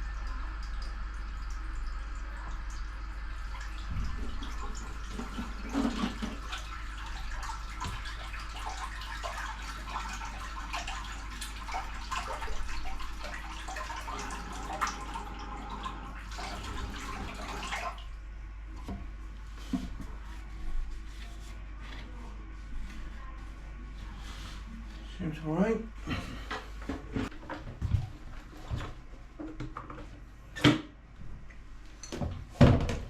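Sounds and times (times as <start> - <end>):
toilet cistern filling with water: 0.0 - 20.4.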